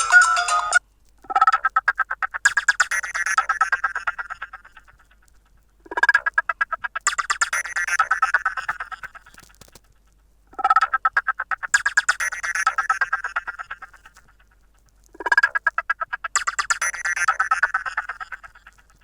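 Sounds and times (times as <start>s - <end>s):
phone ringtone pulsing trill: 0.0s - 0.8s.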